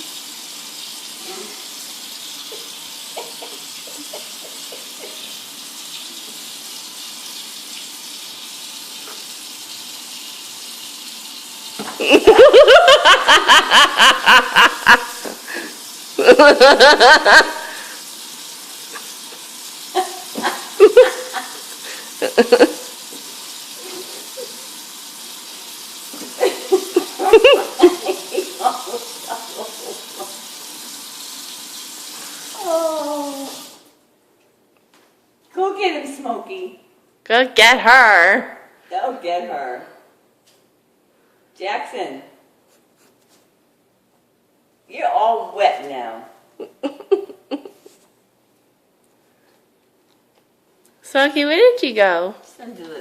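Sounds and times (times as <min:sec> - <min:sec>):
running water hissing: 0:00.0 - 0:34.0
person laughing: 0:03.1 - 0:05.3, 0:12.0 - 0:17.9, 0:20.0 - 0:22.9, 0:26.3 - 0:30.4, 0:46.6 - 0:47.9.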